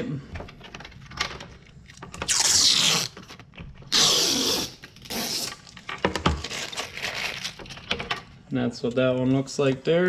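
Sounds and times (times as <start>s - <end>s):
packaging ripping and rustling: 2.2s - 8.1s.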